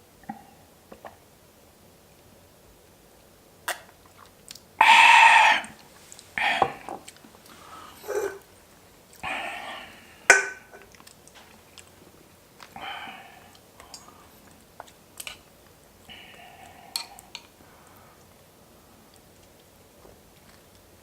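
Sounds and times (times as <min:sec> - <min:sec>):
slurping or sniffing: 0:04.8 - 0:05.8
person chewing: 0:10.8 - 0:12.0.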